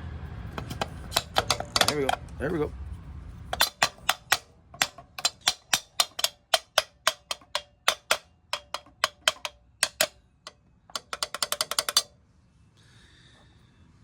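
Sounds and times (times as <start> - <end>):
ratchet clicking: 0.6 - 2.4, 3.5 - 12.1.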